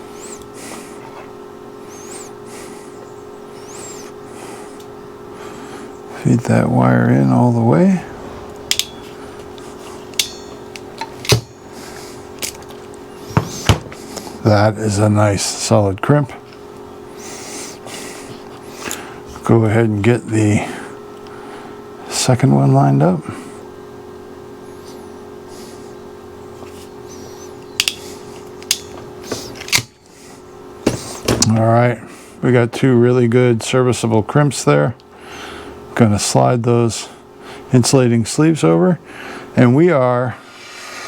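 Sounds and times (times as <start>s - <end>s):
steady hum: 0.0s - 41.0s
crimping tool metallic clicks: 8.6s - 11.6s, 27.6s - 29.0s.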